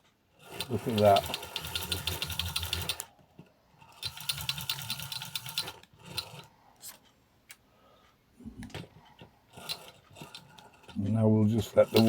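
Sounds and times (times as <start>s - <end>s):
clockwork toy rattling clicks: 11.7s - 12.0s.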